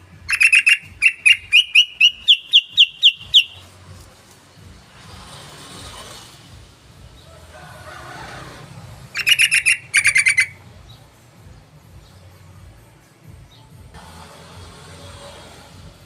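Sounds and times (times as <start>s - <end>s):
bird chattering calls: 0.2s - 3.7s, 9.2s - 10.6s.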